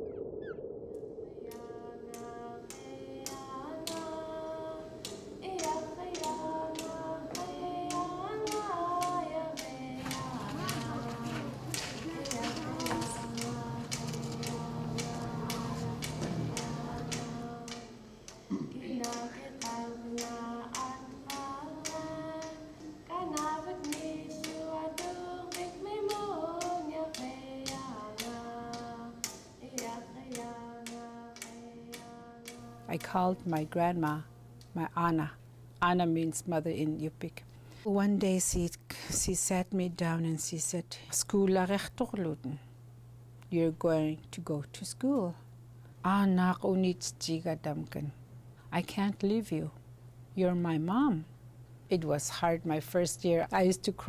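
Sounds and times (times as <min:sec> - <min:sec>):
voices singing: 0:01.3 - 0:34.2.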